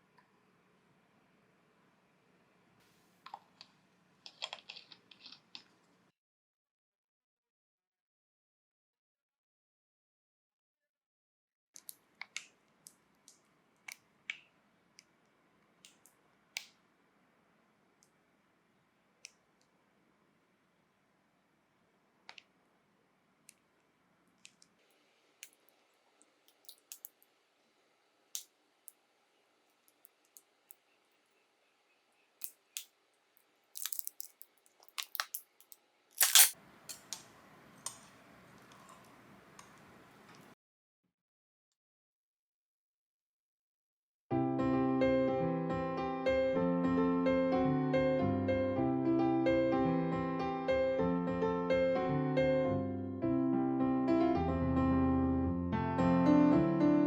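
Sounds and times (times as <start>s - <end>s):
small objects clicking and tapping: 3.3s - 5.8s, 26.5s - 27.2s, 32.4s - 32.9s, 33.8s - 39.0s.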